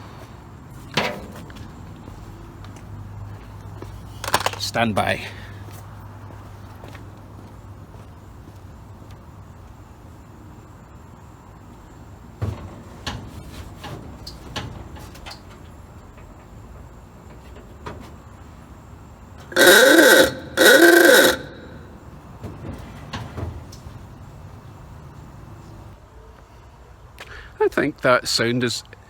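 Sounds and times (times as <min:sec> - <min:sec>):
car horn blasts: 0:19.4 - 0:22.0.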